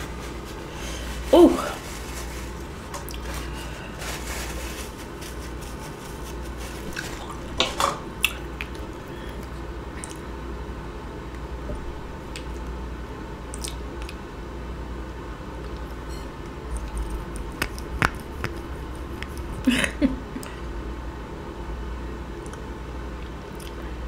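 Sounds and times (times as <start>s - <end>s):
person chewing wet food: 8.2s - 10.2s, 13.5s - 14.2s, 16.7s - 19.6s.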